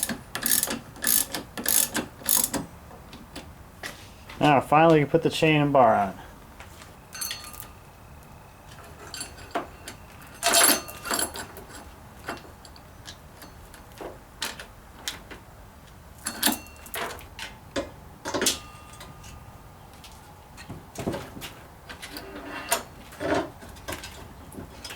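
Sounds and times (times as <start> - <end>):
metallic clinks and rattles: 7.1 - 7.8, 8.8 - 12.8, 16.2 - 17.3
ringing metal clanks: 7.1 - 7.9, 8.8 - 11.6, 16.2 - 17.2, 18.3 - 19.8
metal clatter: 7.2 - 7.8.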